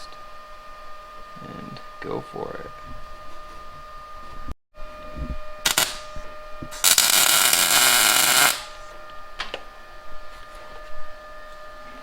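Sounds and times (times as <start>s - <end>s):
welding arc crackling: 5.6s - 8.9s.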